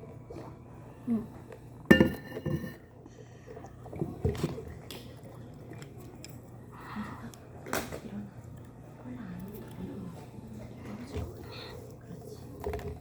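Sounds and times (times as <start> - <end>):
tableware clinking and knocking: 1.9 - 2.8.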